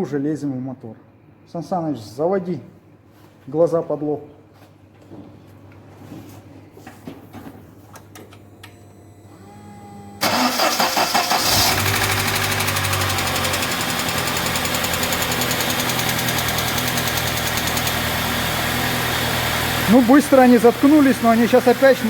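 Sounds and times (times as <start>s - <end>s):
engine starting and idling: 10.2s - 22.0s.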